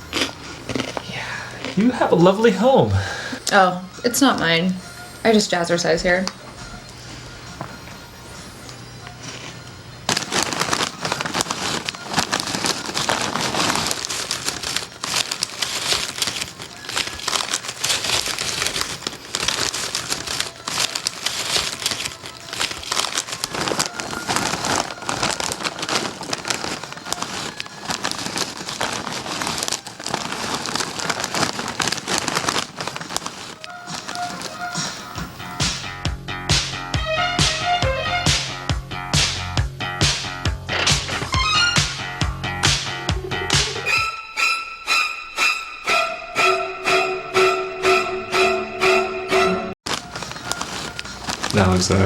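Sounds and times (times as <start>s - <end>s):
crinkling and crackling: 0.0s - 2.8s, 6.1s - 35.9s, 49.8s - 52.0s.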